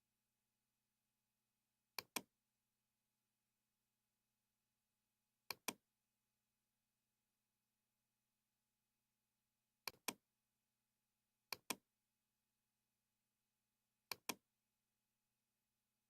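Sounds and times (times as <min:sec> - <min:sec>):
computer mouse clicks: 0:02.0 - 0:02.3, 0:05.5 - 0:05.8, 0:09.8 - 0:10.2, 0:11.5 - 0:11.8, 0:14.1 - 0:14.4.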